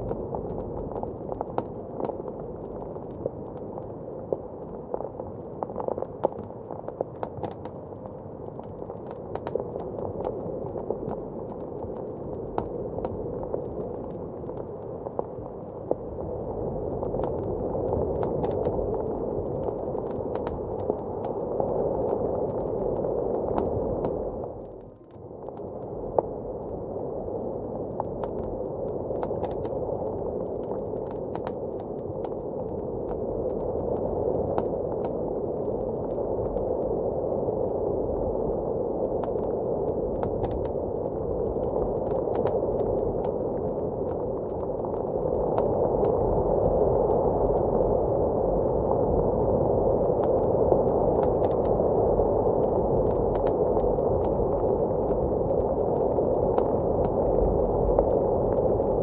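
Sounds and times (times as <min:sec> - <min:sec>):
muffled blizzard wind: 0:00.0 - 0:59.0
fireplace crackling and popping: 0:17.0 - 0:26.2, 0:30.5 - 0:36.6, 0:40.1 - 0:46.4.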